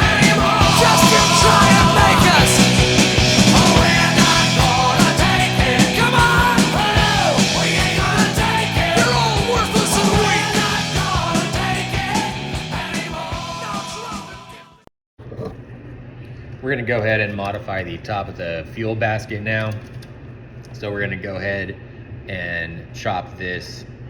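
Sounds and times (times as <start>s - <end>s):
rock music with vocals: 0.0s - 14.8s.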